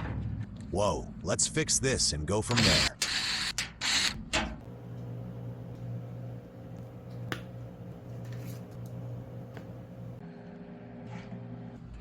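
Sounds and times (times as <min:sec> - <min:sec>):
steady low hum: 0:04.6 - 0:10.2.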